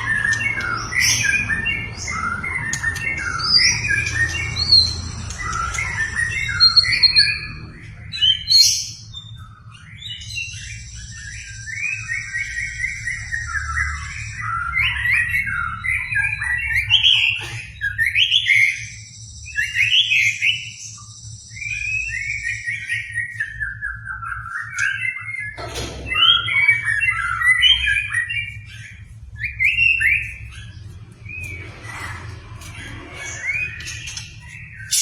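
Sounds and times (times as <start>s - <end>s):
steady low hum: 0.0s - 16.8s, 18.9s - 35.0s
bird singing whistled phrases: 17.8s - 31.6s.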